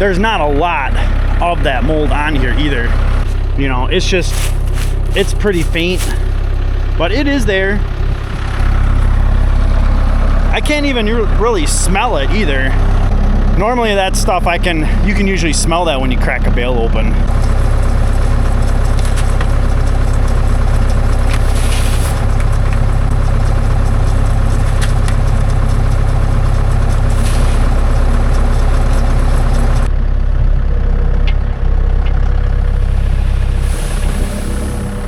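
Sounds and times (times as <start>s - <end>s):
tractor diesel engine idling: 0.0s - 35.0s
hiss: 27.1s - 27.7s, 33.3s - 35.0s.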